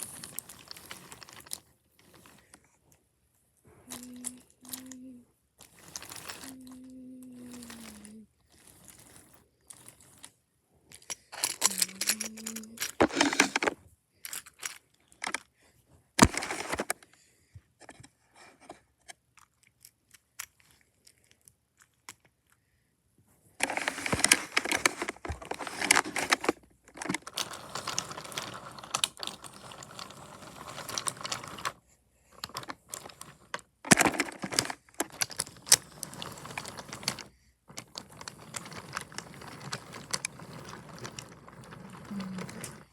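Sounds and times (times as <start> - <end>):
wooden toy trains clattering: 0.0 - 2.6, 3.9 - 10.3, 10.9 - 15.5, 16.2 - 17.0, 23.6 - 31.8, 32.4 - 42.9.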